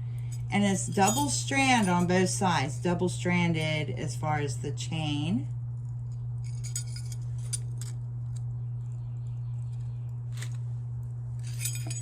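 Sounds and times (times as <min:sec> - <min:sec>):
steady low hum: 0:00.0 - 0:12.0
metal chain clinking: 0:00.3 - 0:02.2, 0:06.1 - 0:08.0, 0:11.4 - 0:12.0.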